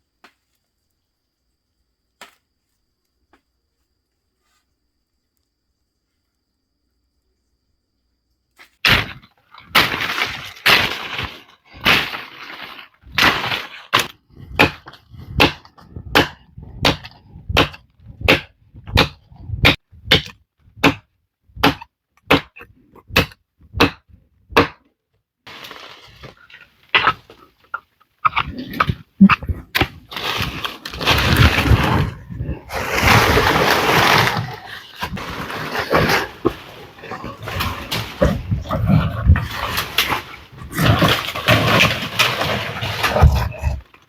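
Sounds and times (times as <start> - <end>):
chopping wood: 2.2 - 2.4, 8.6 - 24.9.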